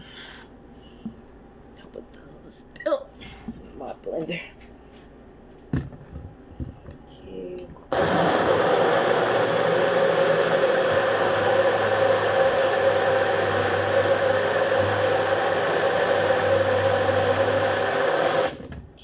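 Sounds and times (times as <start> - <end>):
blender motor whirring: 7.9 - 18.6.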